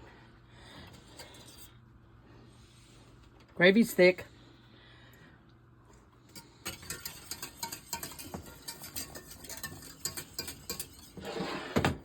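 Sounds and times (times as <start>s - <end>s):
utensil scraping pot: 1.0s - 1.8s, 6.3s - 12.0s
utensil stirring gravy in a pot: 6.3s - 11.8s.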